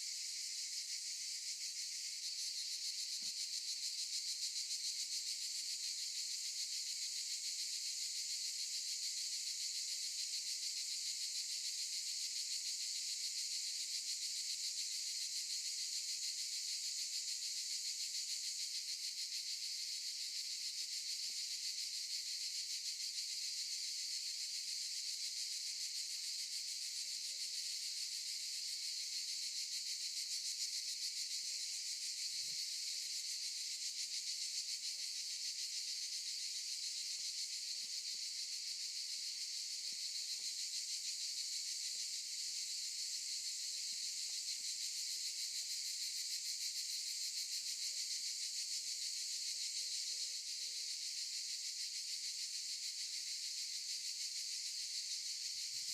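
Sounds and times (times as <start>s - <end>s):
cicadas buzzing: 0.0s - 10.2s, 27.9s - 55.9s.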